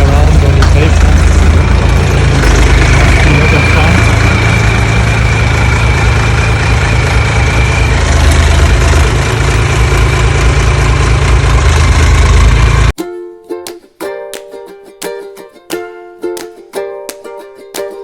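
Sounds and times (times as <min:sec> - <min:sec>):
excavator engine idling: 0:00.0 - 0:12.9
thin high whine: 0:00.6 - 0:09.7.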